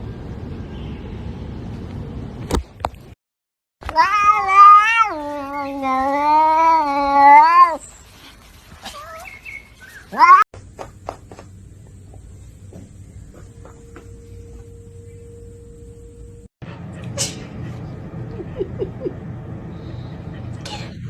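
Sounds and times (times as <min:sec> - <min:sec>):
cat meowing: 0:03.9 - 0:07.8, 0:10.1 - 0:10.4.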